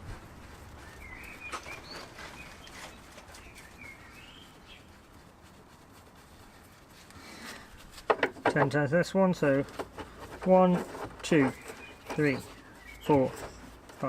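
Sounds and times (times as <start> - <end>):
faint bird chirping: 0.7 - 5.3, 11.3 - 13.8.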